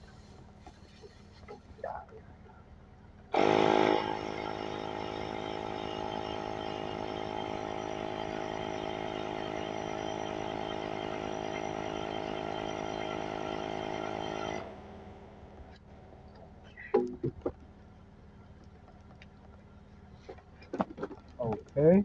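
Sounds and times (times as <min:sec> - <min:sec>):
electric air compressor humming: 0:03.3 - 0:15.2.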